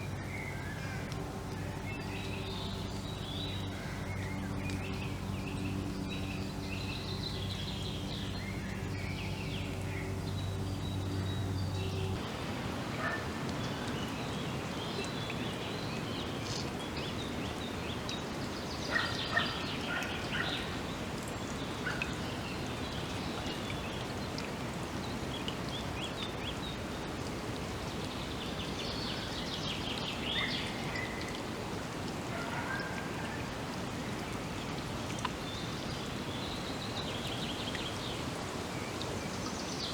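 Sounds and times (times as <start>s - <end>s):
low engine hum: 0.0s - 28.4s
songbirds chirping: 0.0s - 39.9s
steady background hiss: 0.0s - 39.9s.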